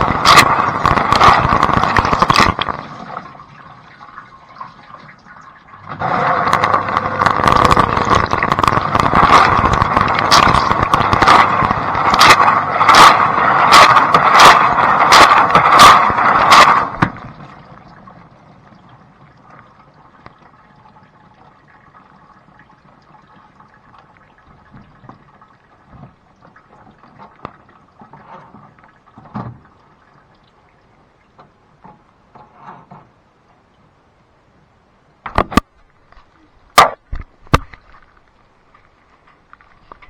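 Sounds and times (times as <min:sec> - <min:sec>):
dishwasher water splashing: 0:00.0 - 0:18.2.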